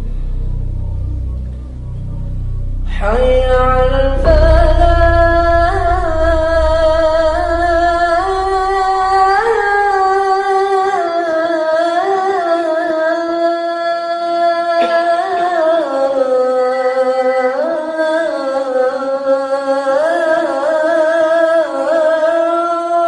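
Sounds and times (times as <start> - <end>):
low rumble: 0.0 - 10.7
melodic chanting voice: 0.0 - 22.6.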